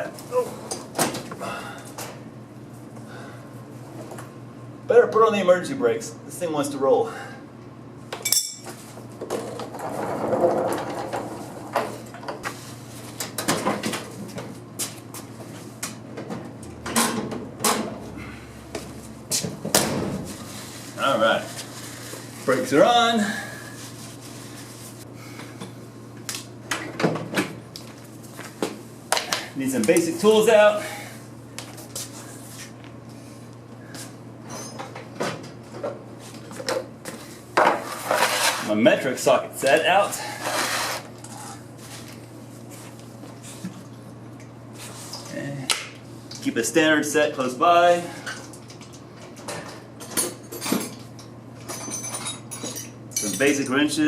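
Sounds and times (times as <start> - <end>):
steady low hum: 0.0 - 54.0
metal tools clinking and clattering: 8.2 - 8.7, 51.6 - 53.7.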